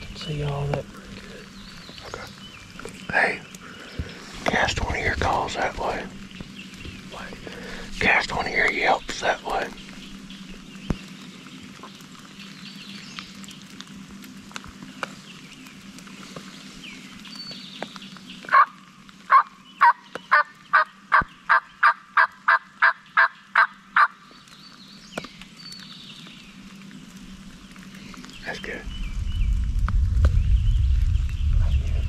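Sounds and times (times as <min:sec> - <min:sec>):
turkey call hen yelps: 0:18.5 - 0:20.8.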